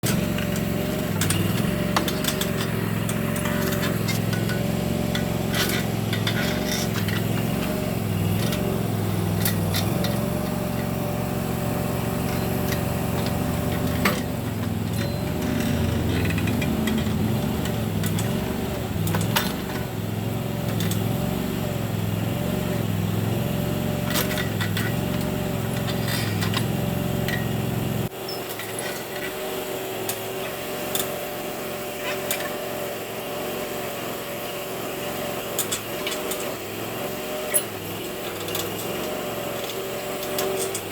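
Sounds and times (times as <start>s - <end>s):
sharp knocks and clanks: 0.0s - 11.0s, 12.2s - 19.9s
backhoe engine hum: 0.0s - 40.9s.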